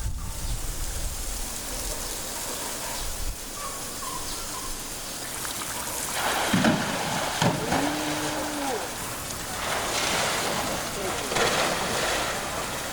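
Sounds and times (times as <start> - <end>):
water hissing: 4.8 - 12.9.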